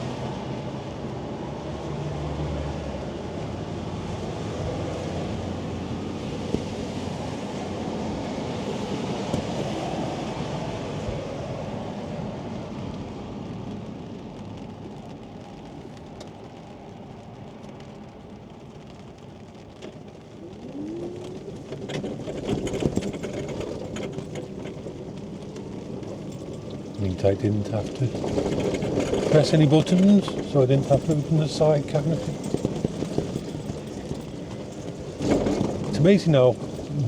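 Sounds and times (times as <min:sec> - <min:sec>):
traffic and rain noise: 0:00.0 - 0:37.0
clicks and rattles: 0:19.9 - 0:37.0.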